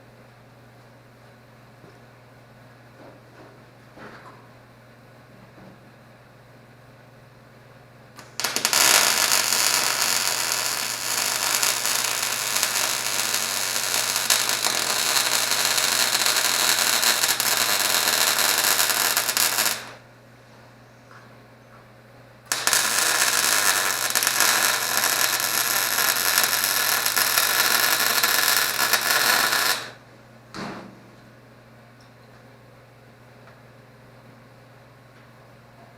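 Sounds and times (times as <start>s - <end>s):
welding arc crackle: 8.2s - 20.0s, 22.5s - 30.0s.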